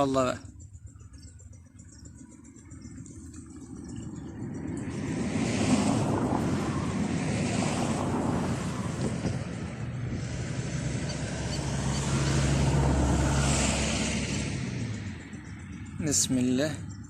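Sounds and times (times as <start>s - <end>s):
vehicle engine passing: 0.9s - 17.0s
wind noise on microphone: 2.8s - 15.2s.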